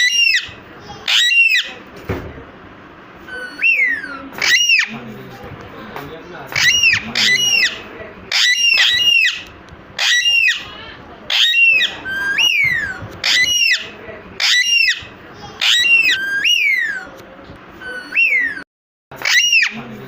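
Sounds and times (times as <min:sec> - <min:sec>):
parrot whistles: 0:00.0 - 0:01.8, 0:03.3 - 0:04.9, 0:06.6 - 0:10.7, 0:11.3 - 0:17.1, 0:17.8 - 0:18.6, 0:19.2 - 0:19.8
parrots screeching: 0:00.0 - 0:01.8, 0:03.3 - 0:05.0, 0:06.5 - 0:17.1, 0:17.8 - 0:18.6, 0:19.2 - 0:19.9.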